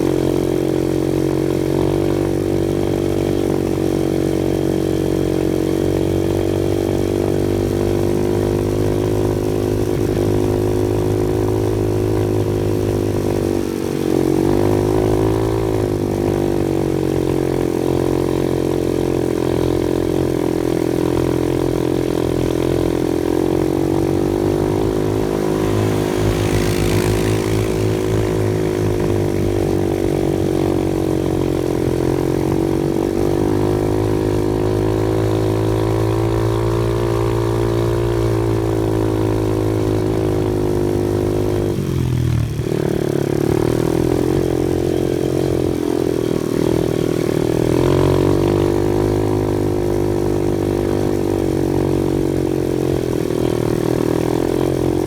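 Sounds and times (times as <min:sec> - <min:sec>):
off-road vehicle engine running: 0:00.0 - 0:55.0
rush of hiss: 0:25.0 - 0:29.2.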